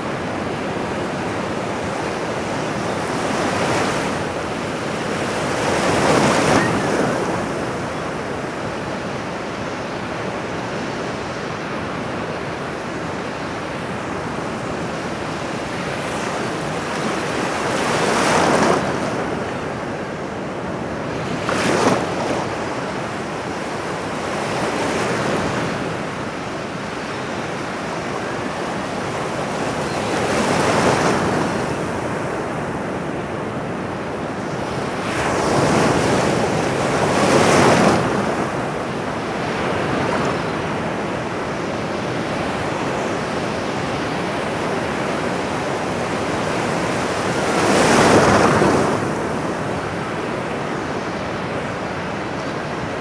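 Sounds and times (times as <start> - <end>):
ocean waves breaking: 0.0 - 9.4.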